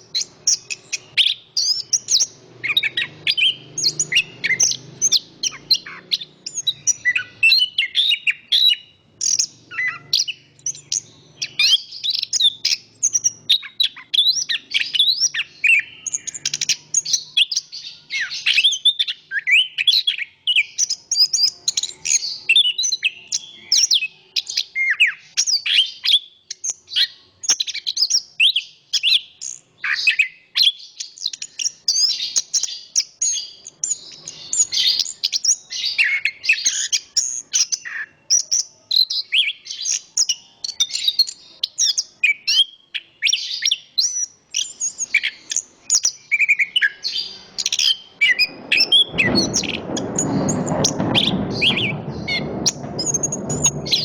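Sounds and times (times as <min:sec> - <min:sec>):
thrush singing: 0:01.9 - 0:11.8
low wind rumble: 0:48.3 - 0:54.0.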